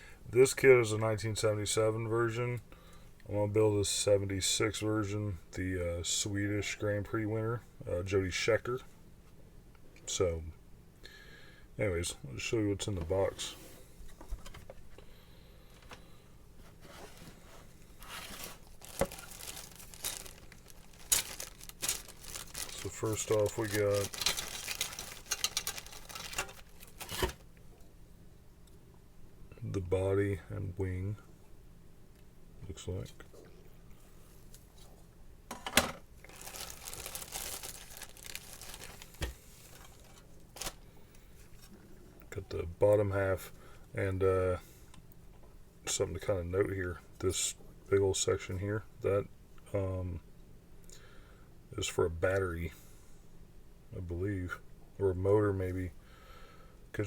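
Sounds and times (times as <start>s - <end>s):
plastic bags crinkling: 17.0s - 27.5s, 36.2s - 40.8s.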